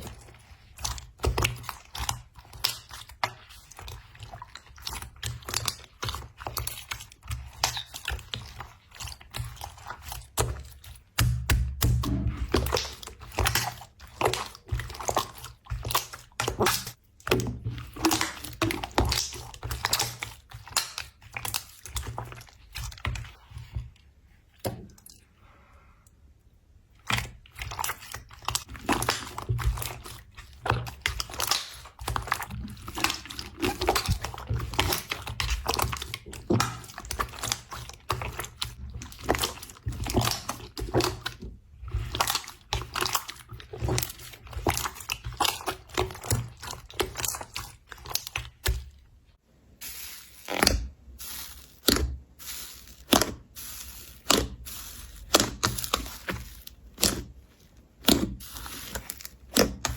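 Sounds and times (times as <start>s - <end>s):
slime squeezed by hand: 49.8s - 59.9s.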